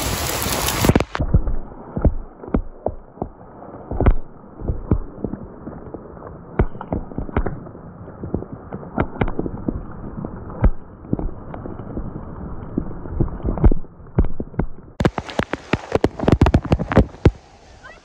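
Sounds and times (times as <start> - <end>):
stream and waterfall rushing: 0.0 - 1.2, 15.0 - 18.0
sharp knocks and thumps: 0.9 - 5.4, 6.6 - 7.6, 13.2 - 17.4.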